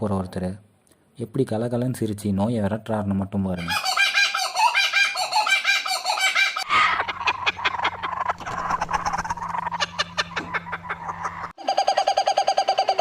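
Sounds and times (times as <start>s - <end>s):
hen cackling: 3.6s - 13.0s.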